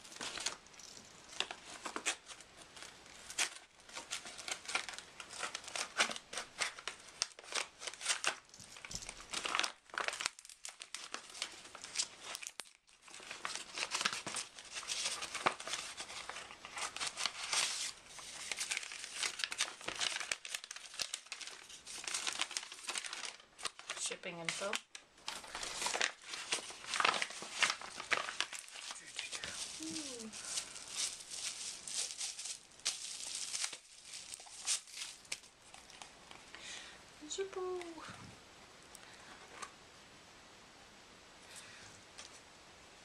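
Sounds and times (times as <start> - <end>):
packaging tearing and crinkling: 0.0 - 36.4.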